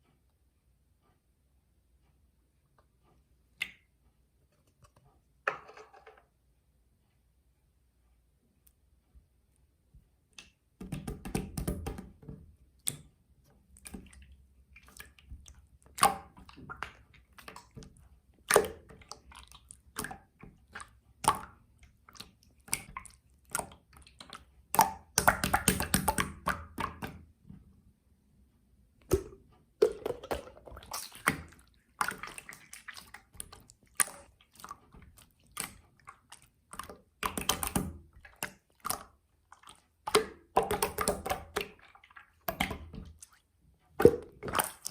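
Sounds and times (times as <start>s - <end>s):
slime squishing and popping: 29.0s - 39.1s, 40.0s - 41.8s.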